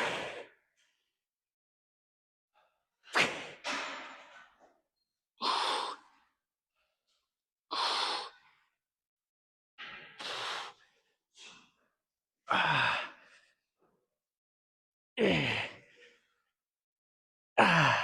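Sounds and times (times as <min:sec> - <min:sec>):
man grunting: 0:17.6 - 0:18.0.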